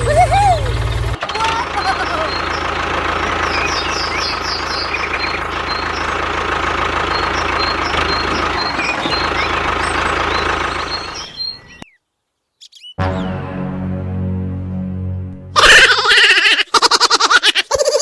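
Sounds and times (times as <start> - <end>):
engine-like running noise: 0.0 - 11.8.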